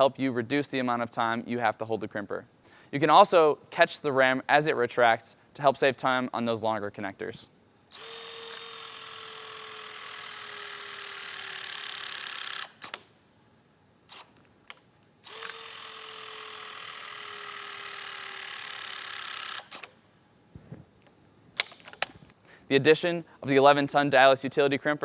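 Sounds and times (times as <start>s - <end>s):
hydraulic pump motor whining: 7.9s - 13.0s, 14.1s - 19.9s.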